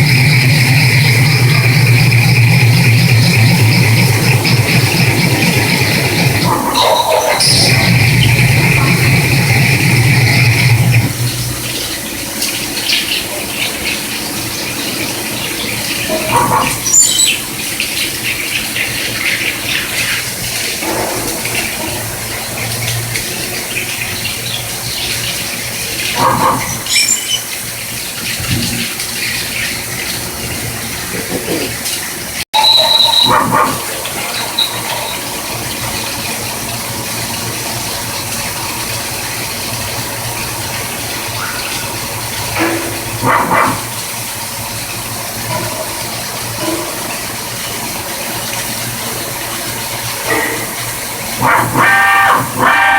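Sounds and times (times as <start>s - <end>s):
machine running: 0.0s - 12.9s, 32.6s - 45.5s
cutter squealing on metal: 6.7s - 8.2s, 16.6s - 17.5s, 26.7s - 27.6s.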